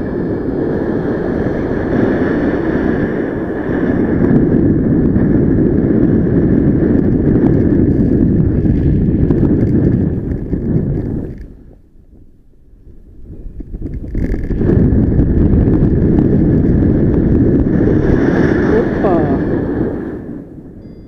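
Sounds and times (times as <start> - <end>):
wind buffeting microphone: 0.0 - 21.0
faint high tone: 20.8 - 21.0.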